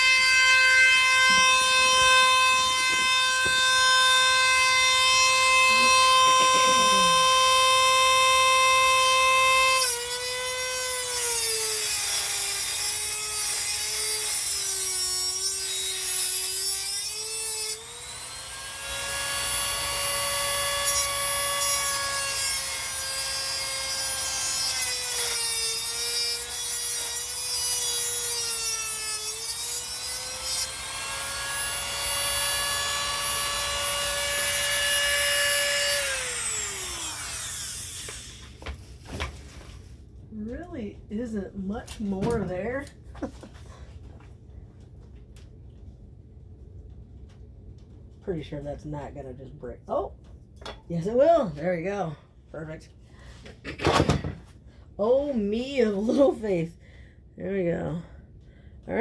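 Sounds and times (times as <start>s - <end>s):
power tool motor whining: 0.0s - 39.1s.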